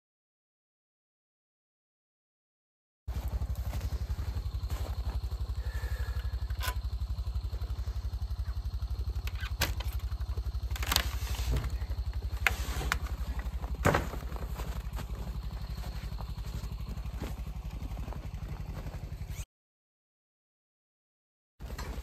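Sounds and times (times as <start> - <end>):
engine low putter: 3.1 - 19.4, 21.6 - 22.0.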